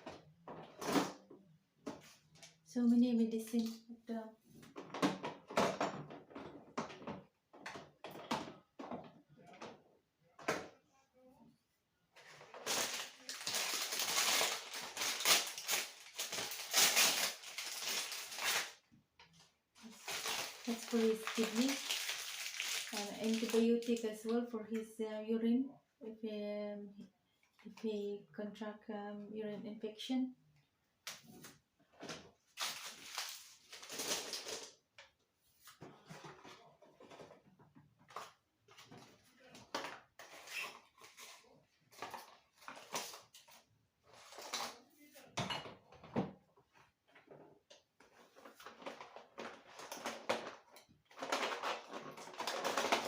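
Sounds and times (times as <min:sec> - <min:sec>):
packets crinkling and rustling: 0:12.2 - 0:18.8, 0:19.8 - 0:24.1, 0:32.5 - 0:34.8, 0:39.7 - 0:44.8, 0:48.0 - 0:53.0.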